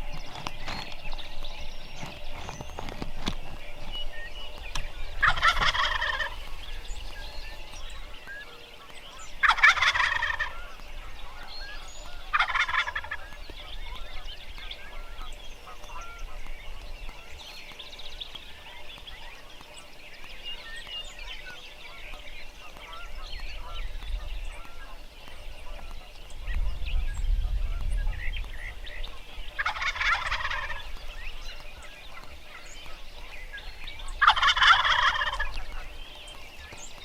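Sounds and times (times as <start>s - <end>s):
songbirds chirping: 0.0s - 37.0s
turkey gobbling: 4.8s - 6.6s, 7.8s - 16.5s, 28.8s - 36.8s.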